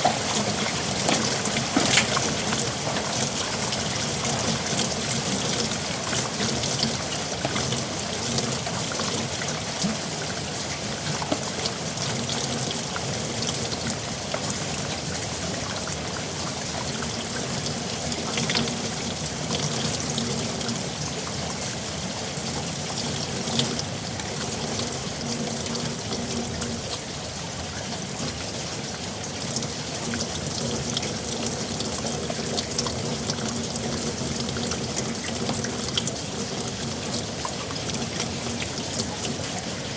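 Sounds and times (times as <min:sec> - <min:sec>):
heavy rain falling: 0:00.0 - 0:09.3
water pouring and trickling: 0:00.0 - 0:39.9.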